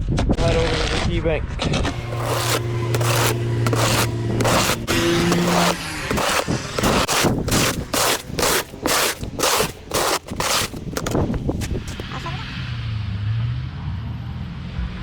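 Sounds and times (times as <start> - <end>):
snow shovel scraping sidewalk: 1.8 - 12.4.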